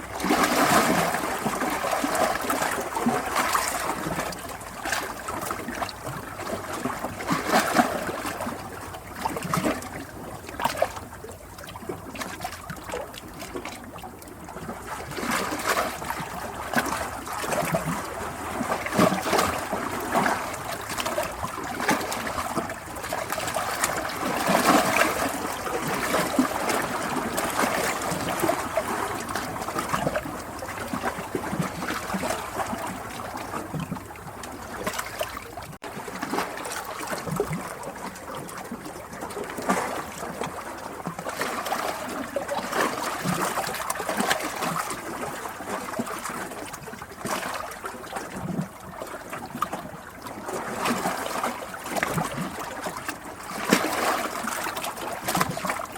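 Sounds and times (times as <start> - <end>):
water trickling and splashing: 0.0 - 55.9.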